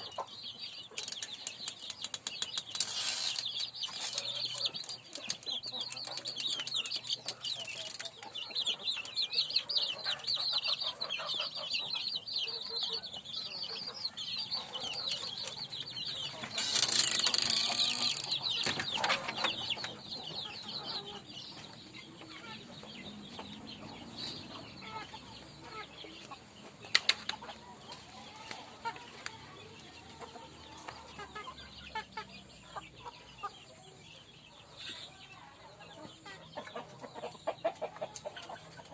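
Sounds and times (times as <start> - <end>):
chickens clucking: 0.0 - 38.9
chicks peeping: 0.0 - 38.9.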